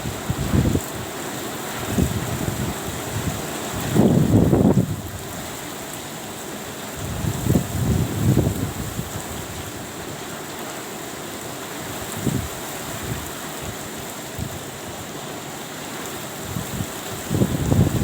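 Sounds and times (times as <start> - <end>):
wind buffeting microphone: 0.0 - 1.1, 1.8 - 5.3, 7.0 - 9.7, 16.5 - 18.0
rain hissing: 0.0 - 18.0.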